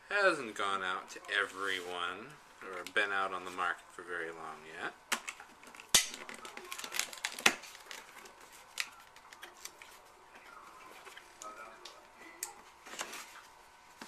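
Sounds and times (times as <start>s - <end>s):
cardboard rustling: 12.6s - 14.0s.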